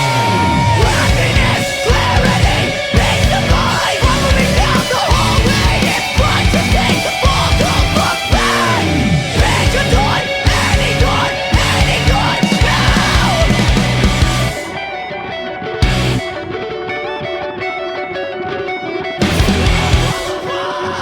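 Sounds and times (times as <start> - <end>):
driving drums: 0.0 - 14.8, 15.8 - 16.3, 19.2 - 20.8
yelled vocals: 0.0 - 14.8, 19.2 - 21.0
distorted guitars: 0.0 - 21.0
heavy rock music: 0.0 - 21.0.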